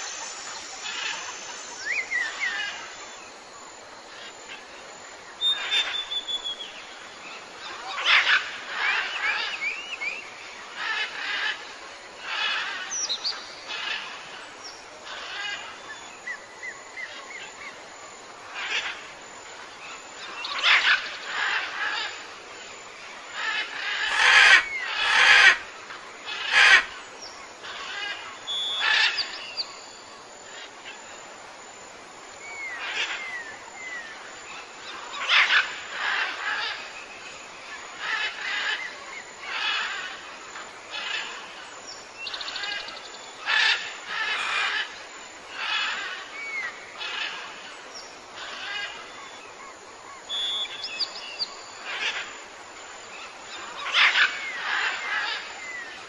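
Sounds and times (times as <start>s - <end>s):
birds calling: 23.3s - 30.0s, 32.4s - 52.4s, 53.1s - 56.0s.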